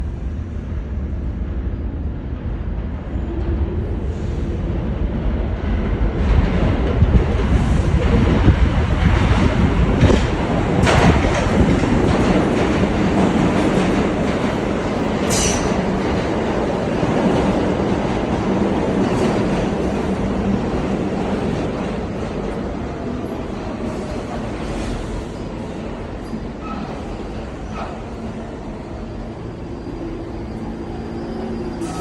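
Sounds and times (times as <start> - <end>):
subway train rumble: 0.0 - 32.0
high-pitched wheel squeal: 29.5 - 32.0.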